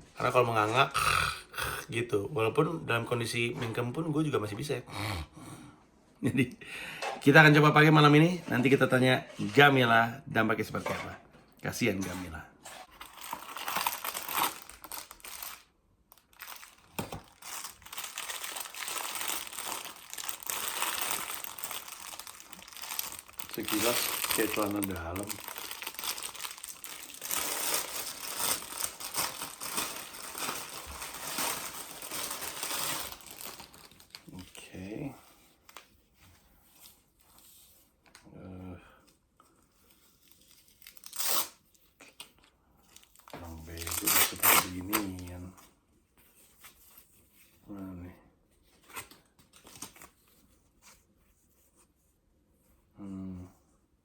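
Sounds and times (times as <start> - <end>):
packaging crinkling and rustling: 12.6 - 35.0, 39.7 - 45.6.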